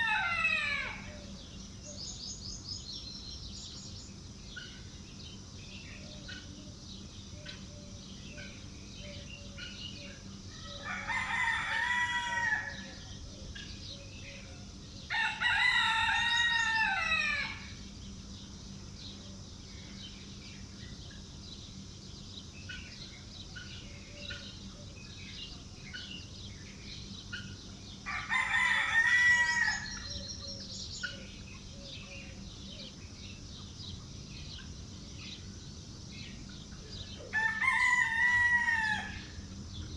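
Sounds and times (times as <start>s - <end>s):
rooster crowing: 0.0s - 1.3s, 10.6s - 13.0s, 15.1s - 17.8s, 28.1s - 30.3s, 37.3s - 39.5s
small birds chirping: 0.0s - 39.9s.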